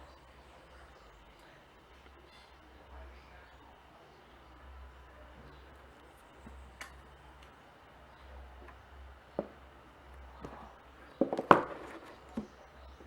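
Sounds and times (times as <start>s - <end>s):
handling taps and knocks: 8.6s - 13.0s.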